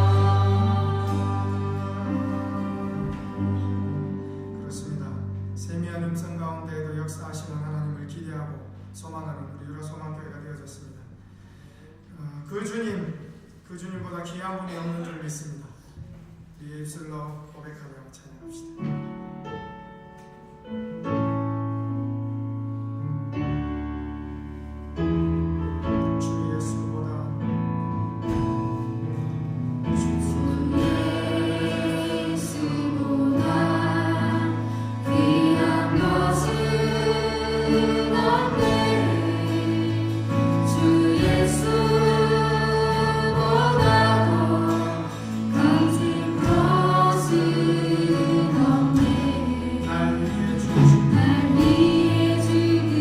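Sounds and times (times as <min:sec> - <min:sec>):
people singing: 0:00.0 - 0:04.2, 0:30.0 - 0:53.0
worship band playing: 0:00.0 - 0:11.8, 0:23.4 - 0:53.0.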